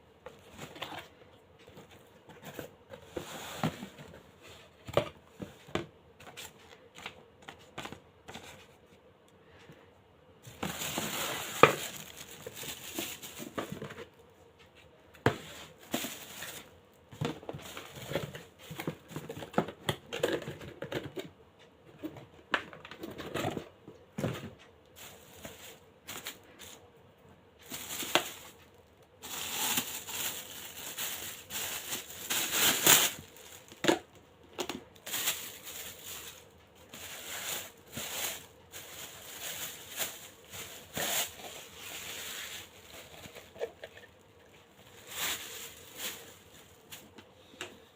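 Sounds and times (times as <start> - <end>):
plastic packaging crinkling: 10.5 - 14.1, 15.8 - 16.8, 27.6 - 47.2.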